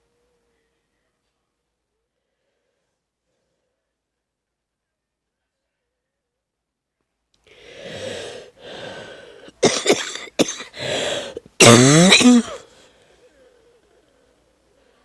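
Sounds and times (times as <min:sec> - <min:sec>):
woman breathing wheezily: 0:07.5 - 0:13.0
woman coughing: 0:09.6 - 0:12.6.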